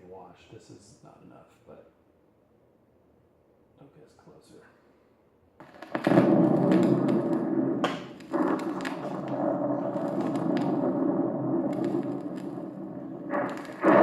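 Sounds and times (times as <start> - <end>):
vinyl clicks and pops: 5.6 - 14.0
dense rushing noise: 6.0 - 14.0.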